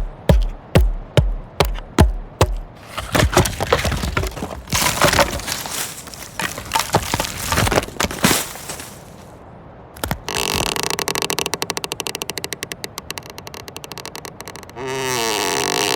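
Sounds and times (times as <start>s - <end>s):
wood cracking and splintering: 2.0s - 9.3s, 10.0s - 10.8s.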